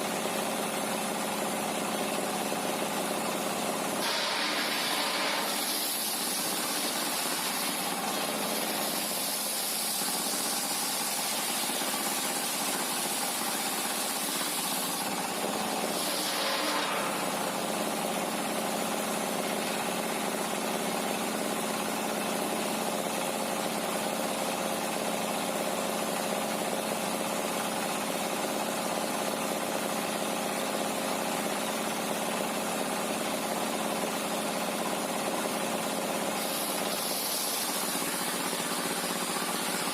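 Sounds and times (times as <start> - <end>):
constant machinery hiss: 4.0 - 20.7, 36.0 - 39.9.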